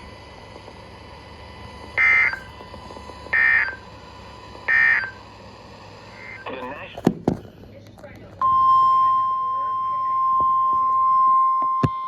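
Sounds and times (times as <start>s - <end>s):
radio hiss: 6.0s - 7.8s.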